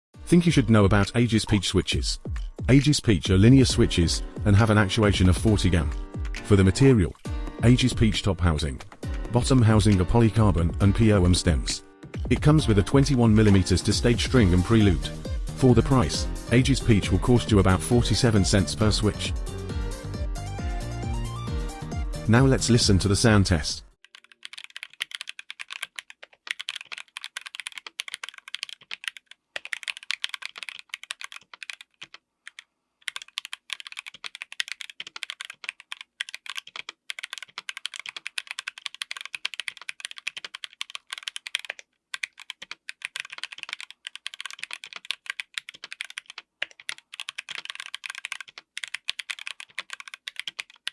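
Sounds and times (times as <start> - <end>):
mechanical keyboard typing: 24.0 - 50.9.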